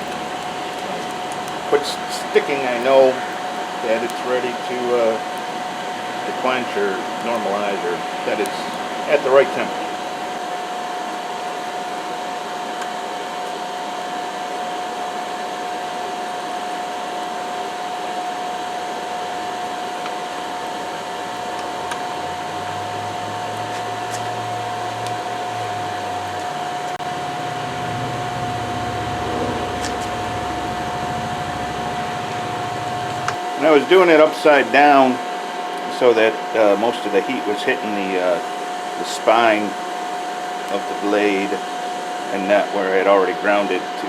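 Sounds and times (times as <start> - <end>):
forge rushing with whine: 0.0 - 42.6
low hum: 21.1 - 33.4.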